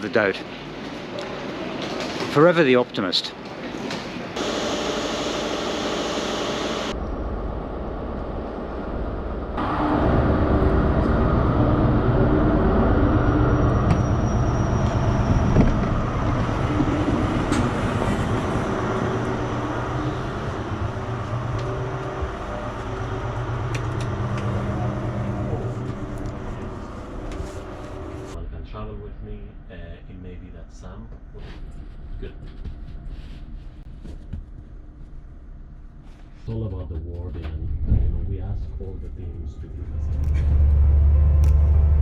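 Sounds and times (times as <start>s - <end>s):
diesel train engine droning: 3.7s - 31.5s, 38.3s - 42.0s.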